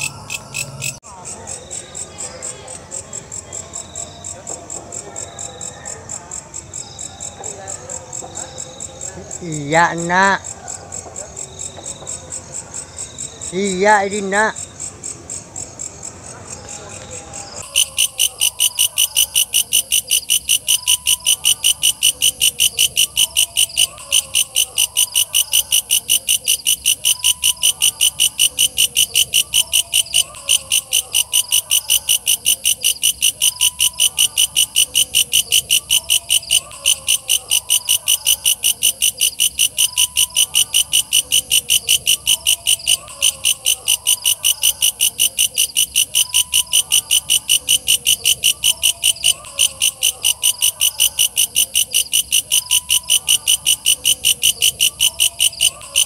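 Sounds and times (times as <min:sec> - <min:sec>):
katydid chirping: 0:00.0 - 0:01.0, 0:17.4 - 0:56.0.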